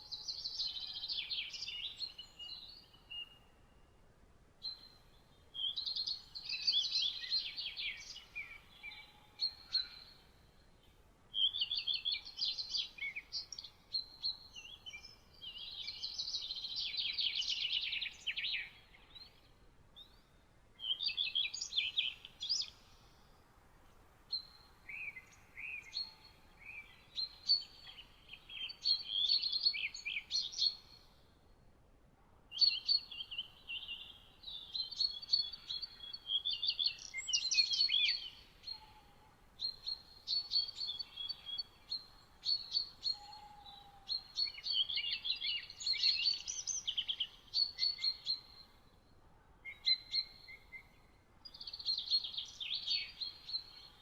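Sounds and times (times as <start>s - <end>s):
songbirds twittering: 0.0s - 31.5s, 32.5s - 54.0s.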